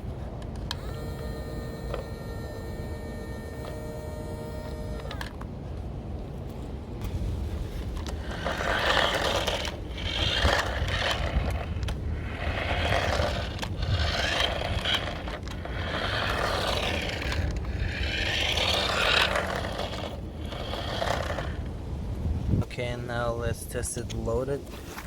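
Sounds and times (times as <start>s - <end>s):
toy wheels scraping on floor: 0.0s - 5.4s, 7.0s - 21.8s
toy truck motor whirring: 0.5s - 5.4s, 7.3s - 21.8s.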